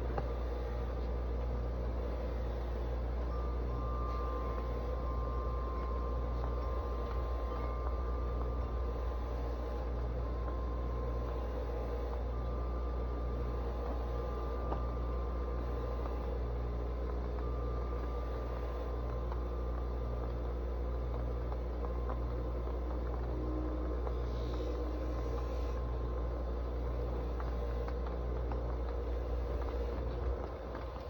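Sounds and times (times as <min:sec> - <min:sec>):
faint whining tones: 0:00.0 - 0:31.0
low pulsing mechanical hum: 0:00.0 - 0:31.0.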